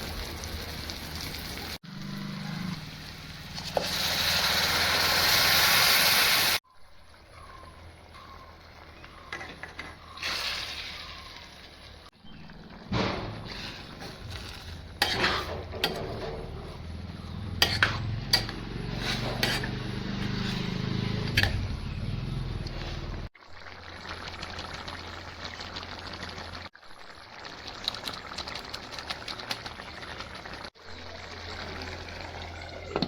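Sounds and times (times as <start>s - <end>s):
crackling sizzle: 0.0s - 7.2s, 8.0s - 33.0s
metal utensil clinking on pot: 17.5s - 19.8s.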